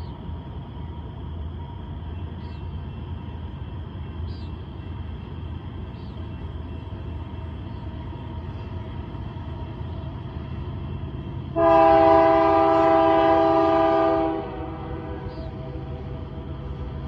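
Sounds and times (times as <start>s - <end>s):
diesel locomotives rumbling: 0.0s - 17.0s
train horn blast: 11.5s - 15.8s.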